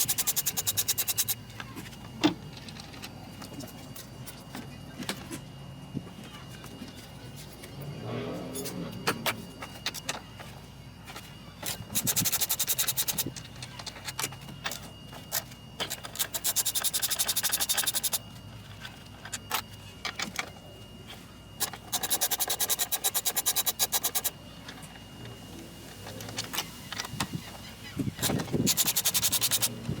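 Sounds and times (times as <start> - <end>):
hand ratchet clicking: 0.0 - 1.4, 11.6 - 14.0, 15.8 - 18.2, 21.6 - 24.3, 28.2 - 29.8.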